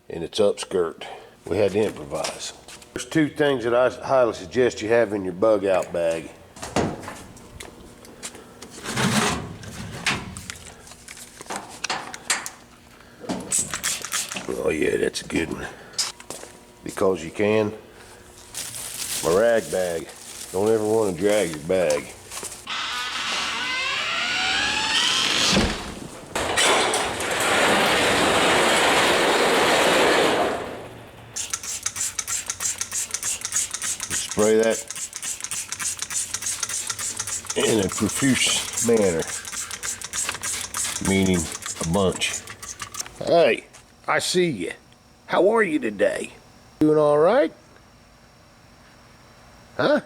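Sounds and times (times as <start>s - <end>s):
objects scraping and rustling: 8.3s - 11.9s, 18.0s - 22.7s, 36.5s - 43.2s
short rising squeal: 22.7s - 26.1s
aerosol spray can hissing: 31.4s - 43.0s
fast rattling: 31.4s - 43.0s.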